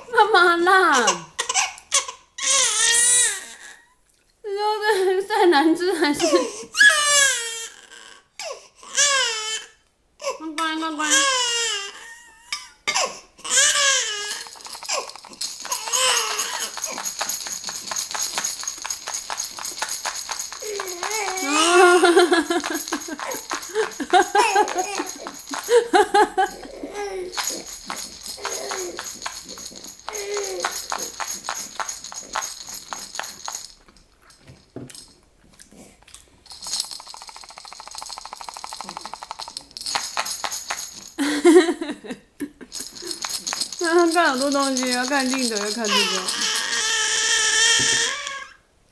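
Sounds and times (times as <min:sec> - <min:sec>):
baby rattle jingling: 0:00.7 - 0:01.8, 0:12.9 - 0:35.2, 0:36.4 - 0:42.0, 0:42.7 - 0:48.4
baby crying: 0:00.8 - 0:04.0, 0:06.2 - 0:17.4, 0:20.6 - 0:31.4, 0:45.5 - 0:48.6.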